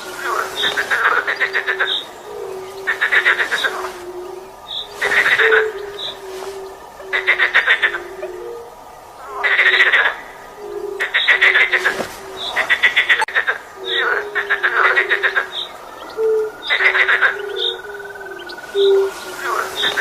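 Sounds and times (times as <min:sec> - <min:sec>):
frogs rattling croak: 0:00.0 - 0:20.0.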